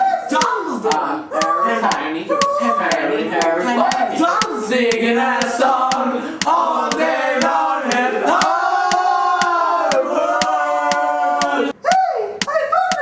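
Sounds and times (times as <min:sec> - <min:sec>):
voices singing a cappella chords: 0:00.0 - 0:12.1
clock-like ticking: 0:00.0 - 0:13.0.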